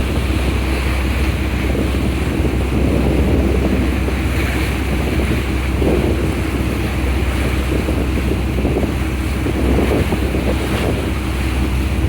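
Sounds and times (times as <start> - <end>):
ferry engine rumble: 0.0 - 12.0
rushing water: 0.0 - 12.0
wind buffeting microphone: 0.0 - 12.0.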